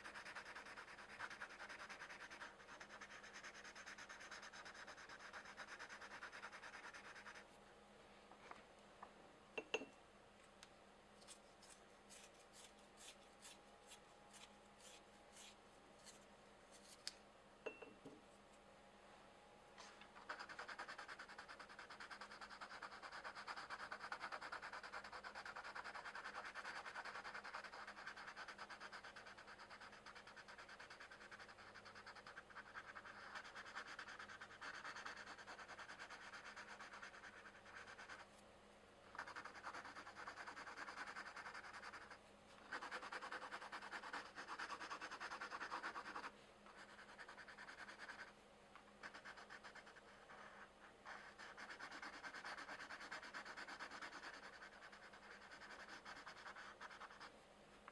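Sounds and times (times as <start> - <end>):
colored pencil shading on paper: 0.0 - 7.4, 20.2 - 38.3, 39.1 - 48.3, 49.0 - 57.3.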